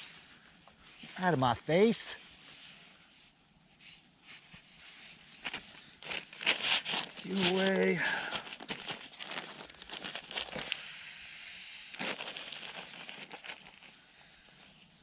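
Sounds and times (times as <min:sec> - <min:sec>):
clothing fabric rustling: 0:02.2 - 0:10.8, 0:11.9 - 0:15.0.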